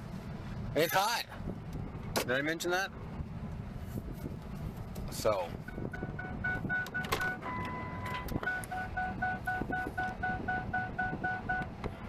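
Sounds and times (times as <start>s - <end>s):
low car hum: 0.0s - 12.0s
car warning beeper: 5.6s - 11.8s.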